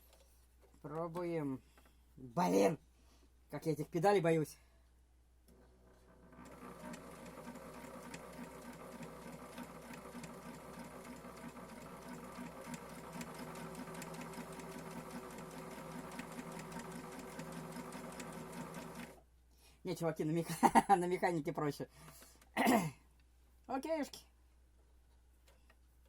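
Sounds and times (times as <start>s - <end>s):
sewing machine stitching: 5.5s - 19.2s.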